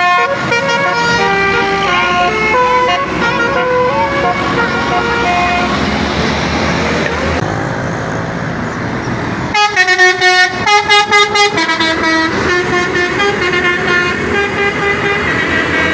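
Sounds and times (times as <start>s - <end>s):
bus horn jingle: 0.0s - 5.8s, 9.5s - 15.4s
engine and road noise: 0.0s - 15.9s.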